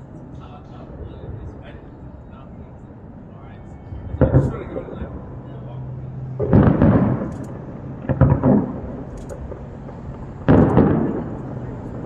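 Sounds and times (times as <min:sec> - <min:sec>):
fireworks booming: 0:04.1 - 0:05.3, 0:06.4 - 0:12.0.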